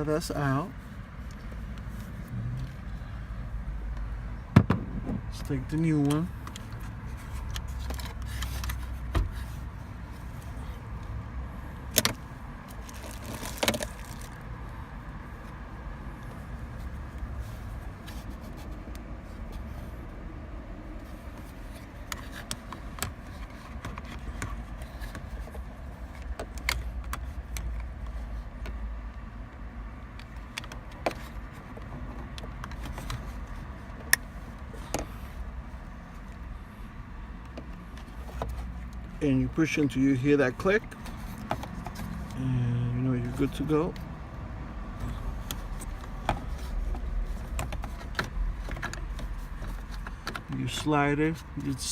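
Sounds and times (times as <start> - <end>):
plastic parts clicking and knocking: 45.4 - 50.6.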